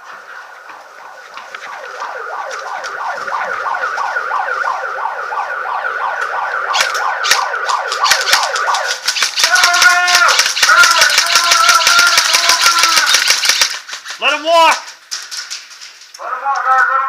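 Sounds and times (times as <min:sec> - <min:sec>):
electronic siren: 0:00.5 - 0:09.4
airsoft guns firing: 0:06.7 - 0:15.8.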